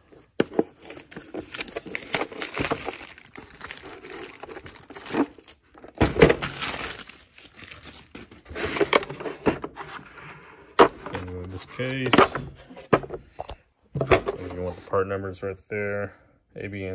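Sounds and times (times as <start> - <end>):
packaging crinkling and rustling: 0.0 - 10.2.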